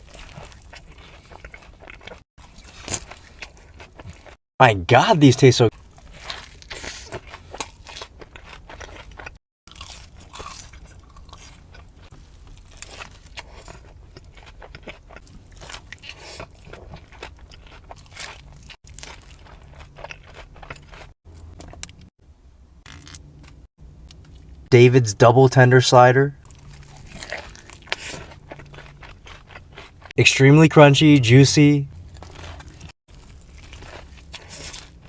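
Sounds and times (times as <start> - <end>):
crunching of fried chicken: 0.0 - 4.4, 5.7 - 22.1, 26.4 - 30.1, 31.9 - 35.0.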